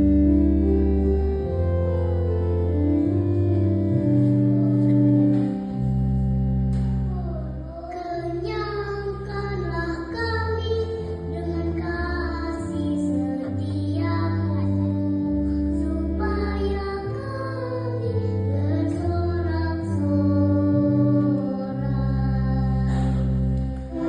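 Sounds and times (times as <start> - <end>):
sustained instrumental accompaniment: 0.0 - 24.0
child singing: 7.1 - 23.3.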